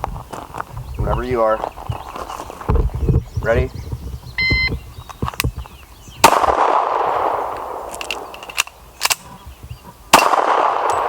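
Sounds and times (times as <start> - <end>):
pistol shot: 6.2 - 9.2, 10.1 - 11.0
pistol reloading clicks: 7.5 - 9.2.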